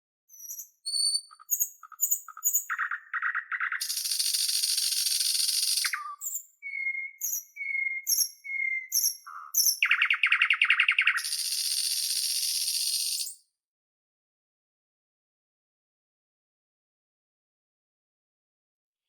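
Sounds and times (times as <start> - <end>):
nightingale singing: 0.3 - 13.4.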